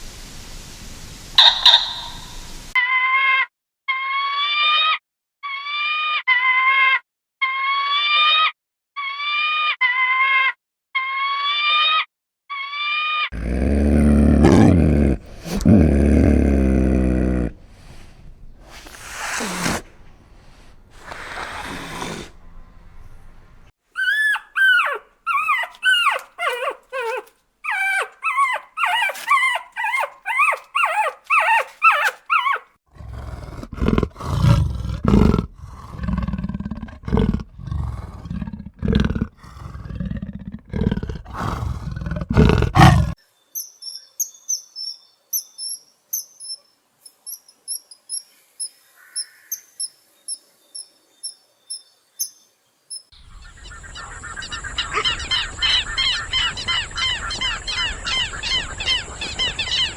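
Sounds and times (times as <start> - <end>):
faint high chirps: 1.4 - 2.6
high squeaky animal calls: 1.4 - 13.3, 24.0 - 32.7, 53.5 - 59.9
breathy animal bursts: 13.4 - 22.4, 39.4 - 40.2.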